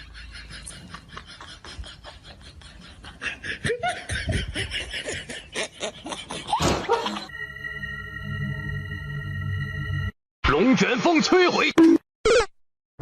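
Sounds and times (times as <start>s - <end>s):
person laughing: 0.0s - 7.3s.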